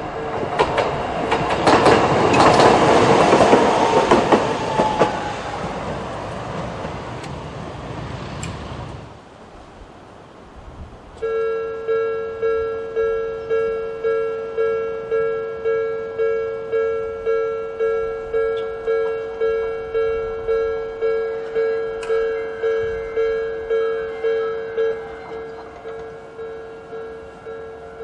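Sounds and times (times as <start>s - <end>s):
level crossing warning bell: 11.2s - 28.0s.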